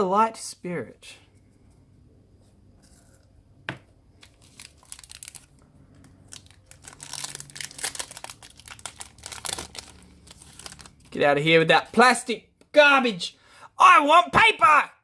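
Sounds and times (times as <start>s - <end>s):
plastic wrapper crinkling and tearing: 4.1s - 11.2s.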